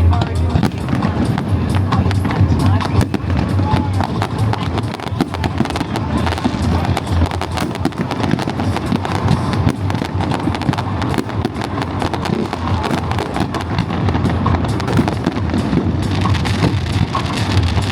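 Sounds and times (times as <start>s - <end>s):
fireworks crackling and popping: 0.0s - 17.9s
music: 0.0s - 17.9s.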